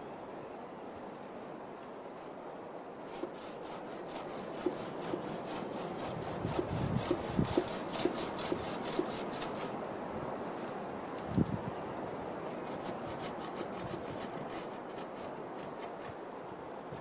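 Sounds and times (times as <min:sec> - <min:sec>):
hand saw cutting wood: 0:03.0 - 0:09.8, 0:12.5 - 0:16.2.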